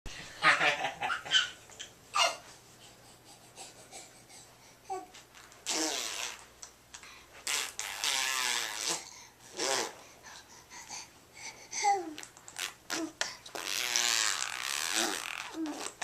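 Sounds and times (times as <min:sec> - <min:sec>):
baby babbling: 0:11.6 - 0:12.3.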